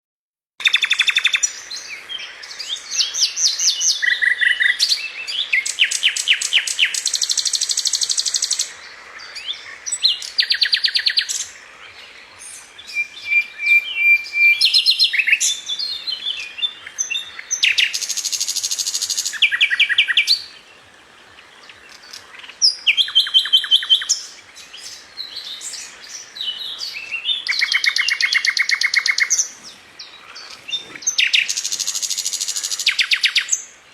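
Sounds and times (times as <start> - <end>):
songbirds singing and chirping: 0.6 - 33.9.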